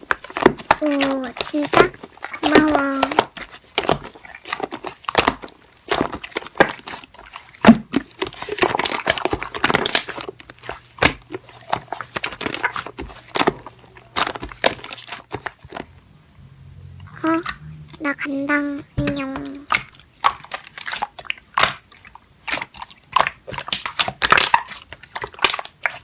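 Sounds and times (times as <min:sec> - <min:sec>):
slime crackling clicks and pops: 0:19.7 - 0:26.0.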